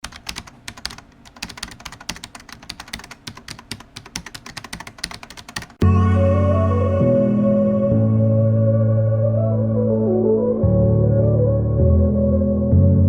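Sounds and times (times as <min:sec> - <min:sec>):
keyboard typing: 0:00.0 - 0:05.8
synthesizer chord music: 0:05.8 - 0:13.0.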